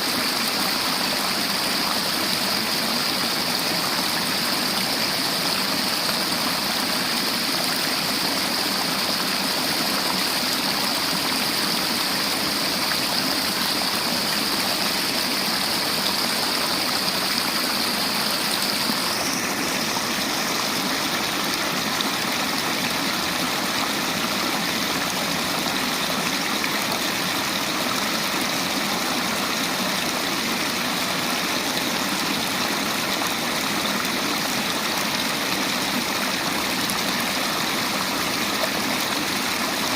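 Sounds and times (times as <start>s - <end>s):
river water rushing over stones: 0.0s - 39.9s.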